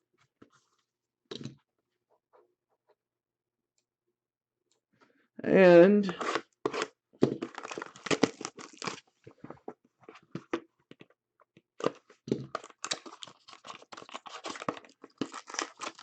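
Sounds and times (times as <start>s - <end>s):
plastic packaging crinkling and tearing: 6.2s - 9.2s, 11.8s - 16.0s.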